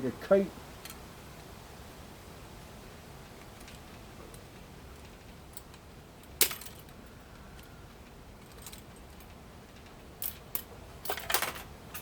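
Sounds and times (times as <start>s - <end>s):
typewriter parts clinking and clicking: 8.4s - 12.0s.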